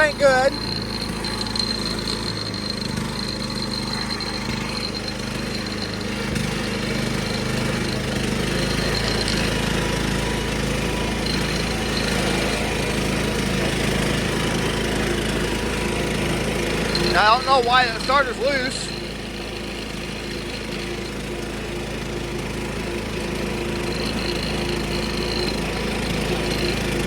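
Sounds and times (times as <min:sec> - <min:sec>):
lawnmower engine running: 0:00.0 - 0:27.0.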